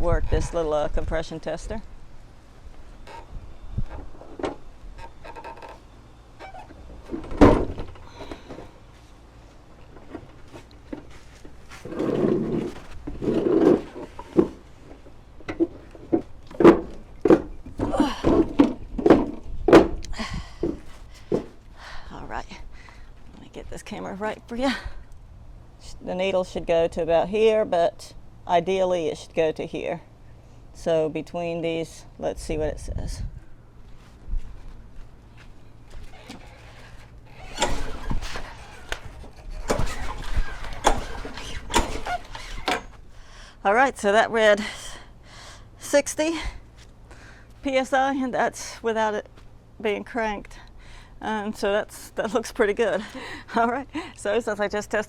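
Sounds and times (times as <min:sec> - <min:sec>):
scraping rustles: 0:02.7 - 0:19.5, 0:33.8 - 0:43.2
sharp knocks and clunks: 0:15.4 - 0:20.0
lawnmower engine cranking: 0:36.1 - 0:43.2.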